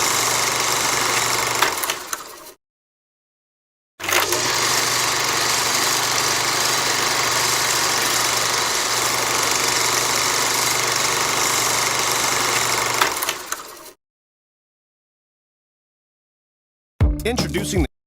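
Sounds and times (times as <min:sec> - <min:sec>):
projector whirring: 0:00.0 - 0:02.4, 0:04.2 - 0:13.8.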